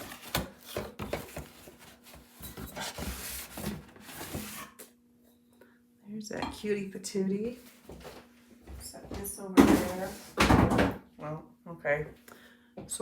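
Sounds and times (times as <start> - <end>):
packaging rustling and scraping: 0.0 - 4.8.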